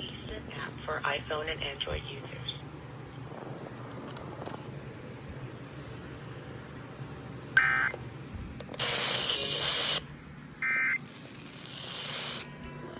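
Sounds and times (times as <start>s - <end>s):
burst of static noise: 8.8s - 10.0s, 11.5s - 12.5s.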